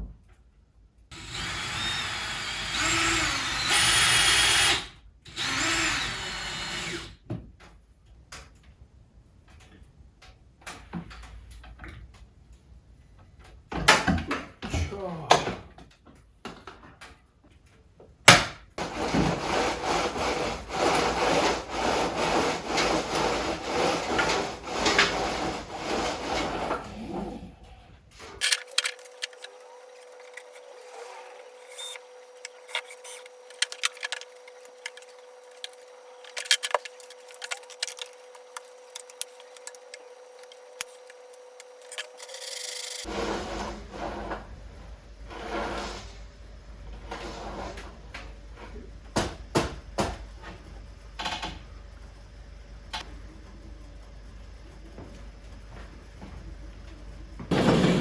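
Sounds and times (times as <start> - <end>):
saw cutting wood: 1.1 - 7.2, 18.8 - 26.9, 28.4 - 43.8.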